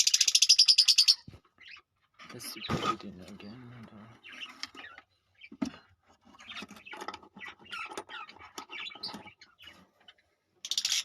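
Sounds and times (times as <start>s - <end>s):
birds chirping: 0.0s - 11.0s
scratching and rustling: 5.7s - 10.2s.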